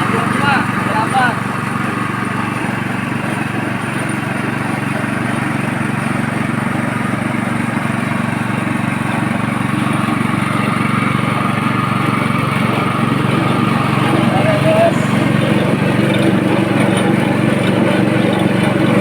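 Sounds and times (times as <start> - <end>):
machine motor humming: 8.6 - 19.0.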